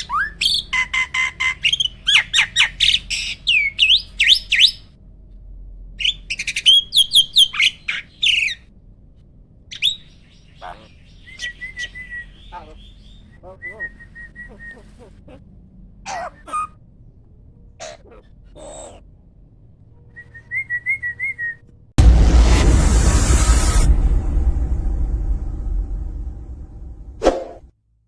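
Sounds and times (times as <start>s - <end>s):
starling whistles and squawks: 9.7s - 15.1s.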